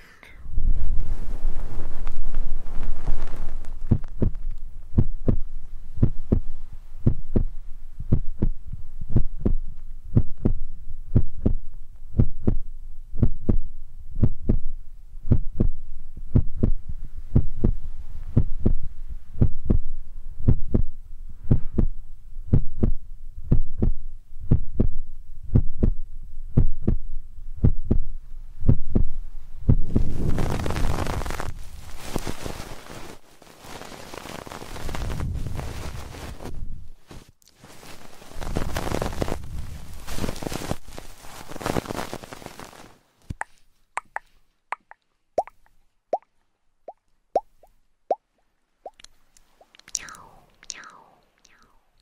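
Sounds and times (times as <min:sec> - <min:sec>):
steady hiss: 0:00.0 - 0:08.1, 0:29.2 - 0:44.4
soft low thumps: 0:00.4 - 0:32.7.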